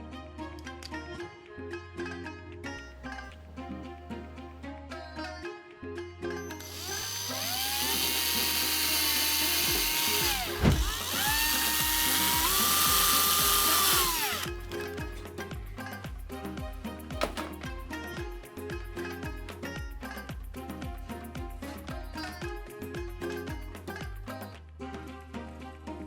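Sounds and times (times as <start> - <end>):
plucked-string background music: 0.0 - 26.0
electric drill motor whine: 6.6 - 15.2.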